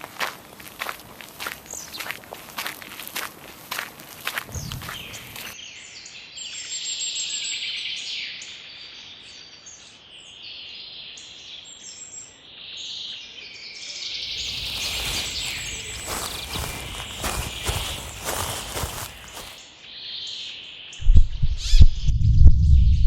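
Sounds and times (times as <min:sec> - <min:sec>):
footsteps: 0:00.0 - 0:05.6, 0:14.3 - 0:19.6
birds chirping and singing: 0:14.3 - 0:19.6.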